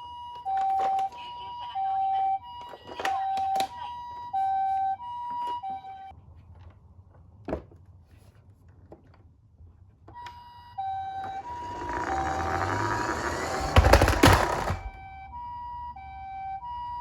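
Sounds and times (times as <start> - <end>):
toy two-tone siren: 0.0 - 6.1, 10.2 - 17.0
loud knocks: 11.3 - 15.0.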